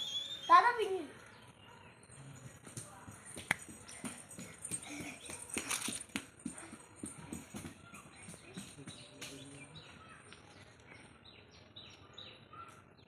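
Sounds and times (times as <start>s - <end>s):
young parrot chirping: 0.0s - 0.6s.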